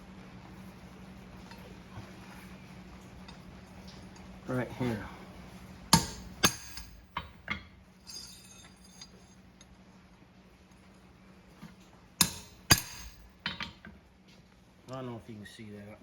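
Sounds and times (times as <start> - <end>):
hammer striking steel stamps: 5.9 - 9.1, 12.2 - 13.8.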